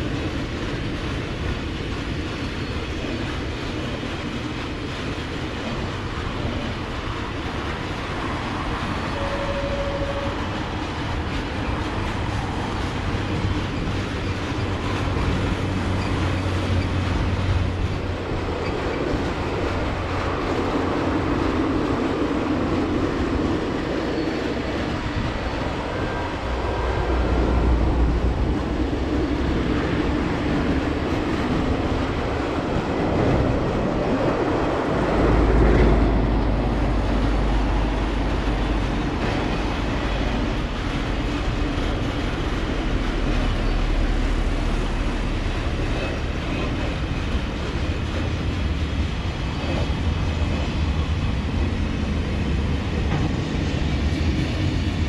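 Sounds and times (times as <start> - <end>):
train wheels rumbling and rattling: 0.0 - 55.0.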